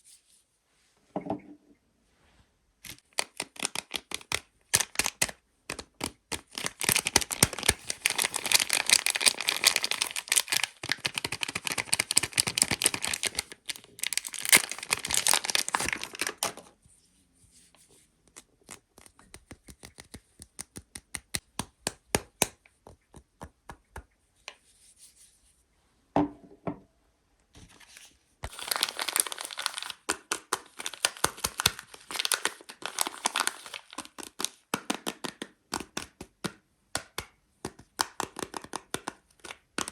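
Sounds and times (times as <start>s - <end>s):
wrappers crinkling and tearing: 2.9s - 16.6s, 28.4s - 35.4s.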